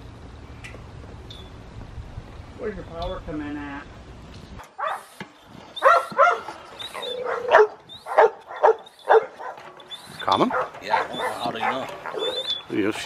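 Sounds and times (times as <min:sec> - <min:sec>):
dog barking: 0:04.8 - 0:05.1, 0:05.8 - 0:09.7, 0:10.4 - 0:12.5.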